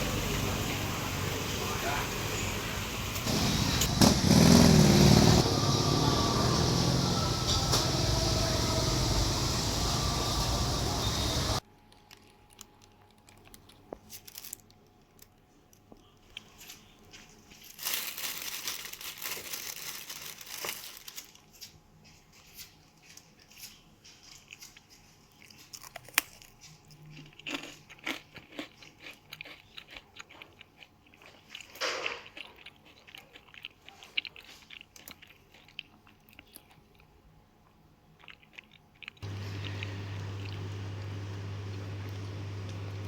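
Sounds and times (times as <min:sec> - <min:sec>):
chewing crispy fritters: 0:11.9 - 0:43.0
low steady hum: 0:39.2 - 0:43.0.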